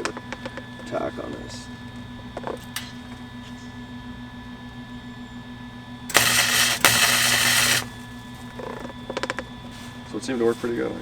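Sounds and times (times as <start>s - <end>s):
welding arc sizzling hiss: 6.1s - 8.8s.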